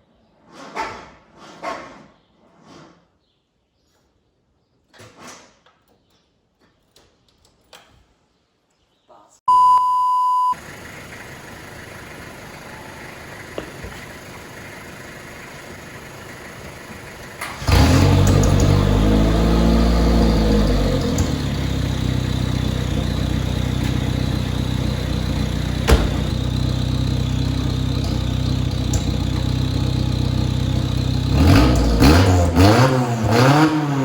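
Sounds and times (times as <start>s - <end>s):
loud electronic beep: 9.5s - 10.6s
car engine starting and running: 9.5s - 34.0s.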